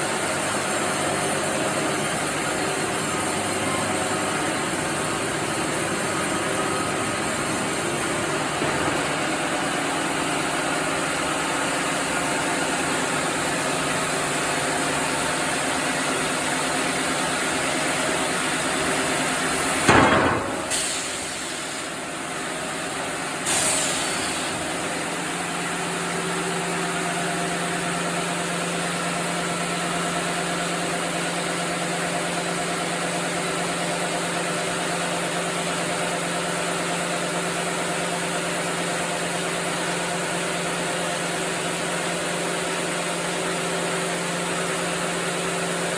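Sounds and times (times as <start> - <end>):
sawmill machinery humming: 0.0 - 45.9
loud knock: 19.8 - 21.0.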